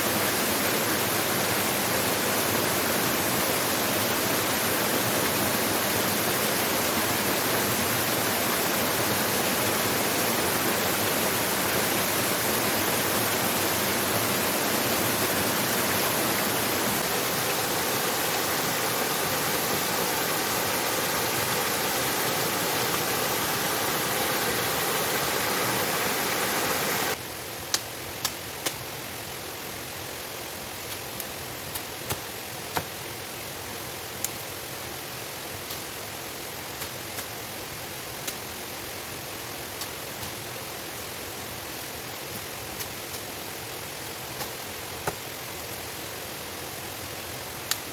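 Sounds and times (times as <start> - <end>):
waterfall rushing: 0.0 - 27.2.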